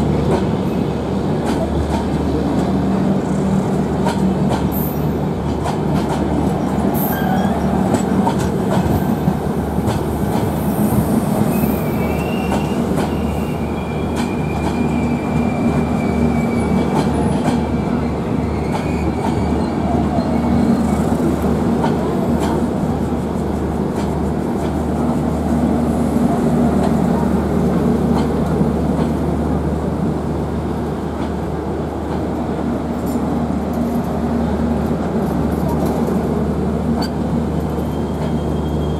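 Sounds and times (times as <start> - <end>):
diesel train low rumble: 0.0 - 38.9
faint wheel squeal: 37.0 - 38.9.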